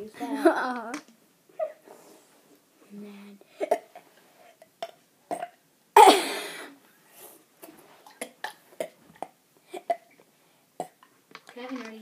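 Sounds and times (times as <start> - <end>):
child burping: 4.8 - 6.7.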